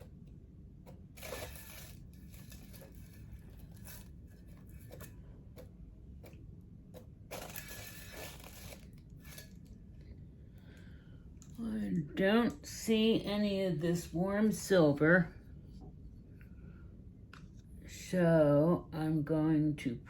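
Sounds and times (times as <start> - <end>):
painting tools scraping and rustling: 0.9 - 6.4, 7.0 - 9.8.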